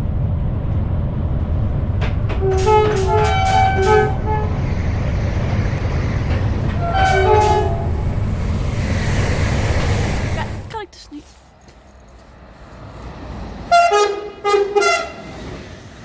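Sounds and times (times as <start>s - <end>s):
steady low rumble: 0.0s - 10.7s
two-tone train horn blasts: 2.3s - 8.2s, 13.7s - 15.4s.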